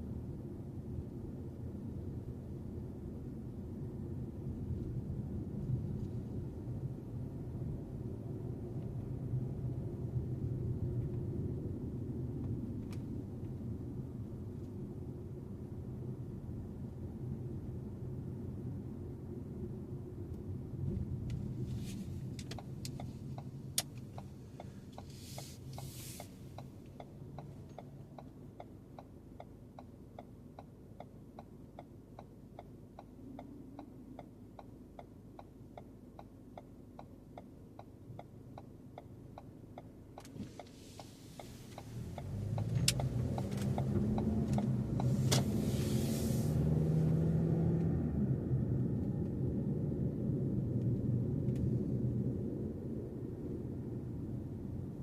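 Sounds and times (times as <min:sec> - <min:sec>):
car engine and road noise: 0:00.0 - 0:55.0
car cabin rumble: 0:20.2 - 0:29.8, 0:39.0 - 0:47.2
turn signal clicking: 0:20.3 - 0:45.6.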